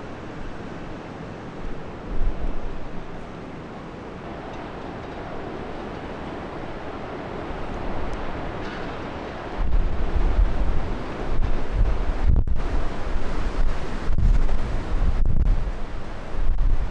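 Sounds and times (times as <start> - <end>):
wind buffeting microphone: 1.6 - 3.2, 4.2 - 16.9.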